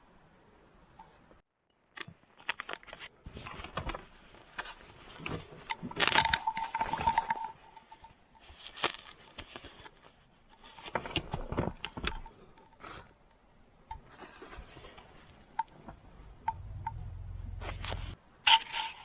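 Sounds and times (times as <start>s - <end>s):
objects clicking and knocking: 1.9s - 18.2s
low rumble: 16.0s - 18.2s.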